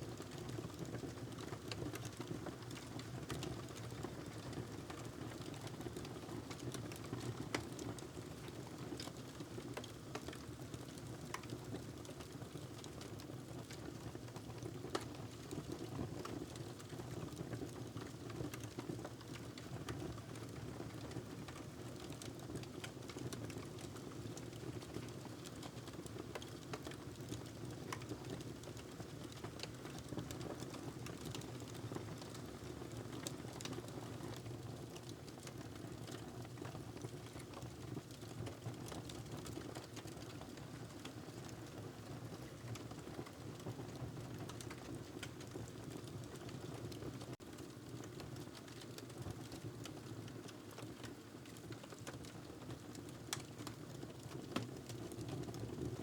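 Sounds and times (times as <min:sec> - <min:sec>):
wood fire crackling: 0:47.5 - 0:55.8.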